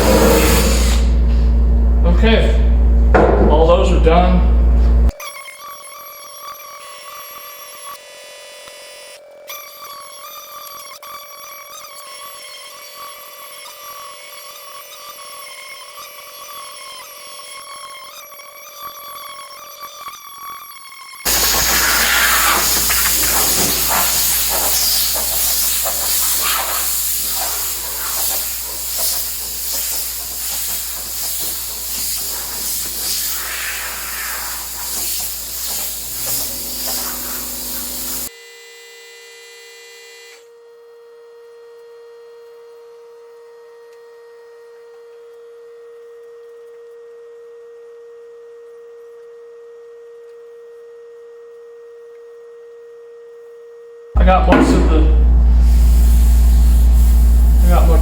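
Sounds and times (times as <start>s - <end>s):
loud hissing: 0.0s - 1.2s, 21.3s - 38.3s, 54.2s - 58.0s
low hum: 0.0s - 5.1s, 54.2s - 58.0s.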